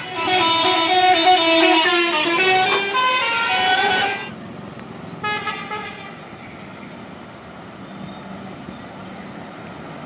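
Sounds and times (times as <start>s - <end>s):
horn toot: 0.0s - 4.3s.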